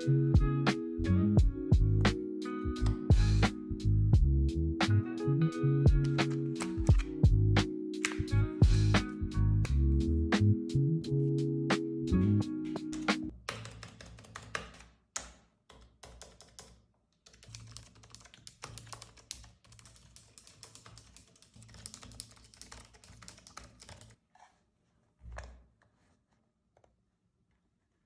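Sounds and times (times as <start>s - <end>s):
soft keyboard key clicks: 6.0s - 7.2s, 8.0s - 8.3s.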